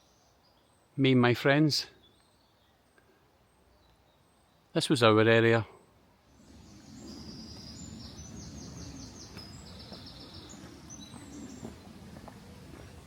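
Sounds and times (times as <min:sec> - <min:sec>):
songbird singing: 0:00.0 - 0:13.0
steady low rumble: 0:06.4 - 0:13.0.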